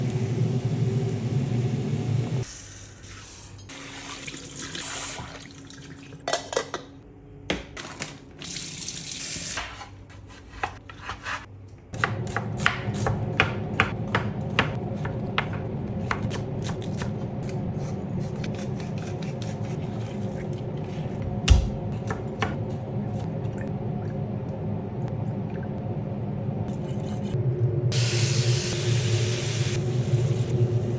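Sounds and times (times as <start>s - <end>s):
kitchen knocks and taps: 21.4s - 22.6s.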